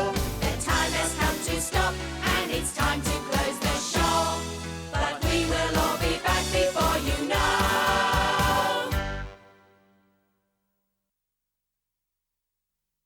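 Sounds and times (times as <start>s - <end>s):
upbeat children's theme song: 0.0s - 9.7s.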